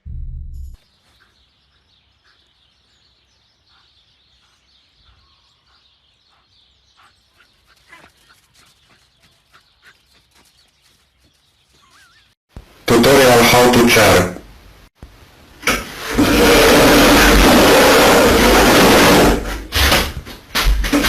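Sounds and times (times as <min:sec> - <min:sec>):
animal chirping calls: 0:11.7 - 0:12.4.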